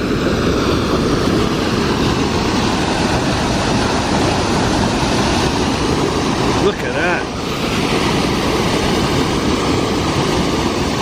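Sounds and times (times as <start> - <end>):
water rushing over weir: 0.0 - 11.0.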